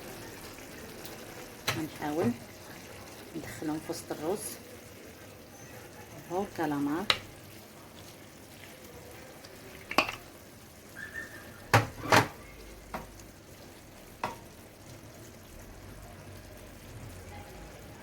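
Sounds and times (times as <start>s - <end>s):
faint sizzle of rice cooking: 0.0s - 18.0s
utensil knocking on a pan: 7.0s - 7.3s, 9.9s - 10.3s, 11.7s - 13.1s, 14.2s - 14.5s.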